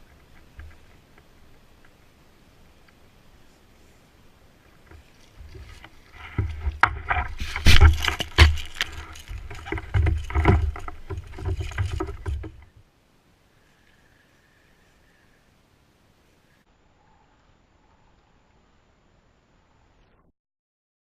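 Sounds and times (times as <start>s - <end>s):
knocks and clatter on a kayak: 4.8s - 12.8s.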